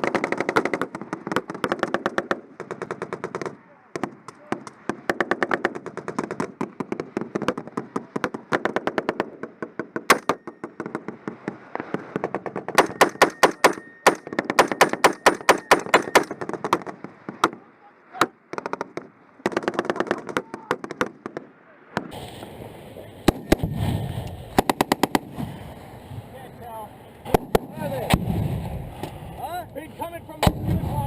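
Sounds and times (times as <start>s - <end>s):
automatic gunfire: 0.0s - 3.6s, 4.9s - 11.2s, 12.2s - 17.6s, 24.5s - 25.4s.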